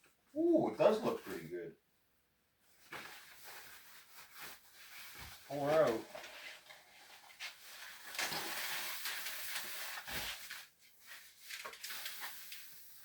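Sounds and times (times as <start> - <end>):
packaging rustling and scraping: 2.8 - 13.0.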